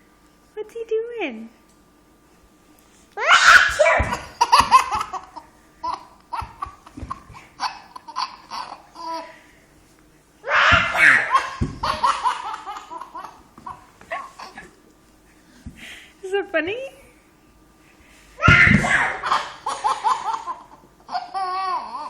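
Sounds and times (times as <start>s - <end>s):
baby laughing: 3.6s - 9.3s, 10.9s - 14.7s, 18.9s - 22.0s
baby giggling: 4.0s - 9.3s, 11.0s - 14.7s, 19.0s - 22.0s.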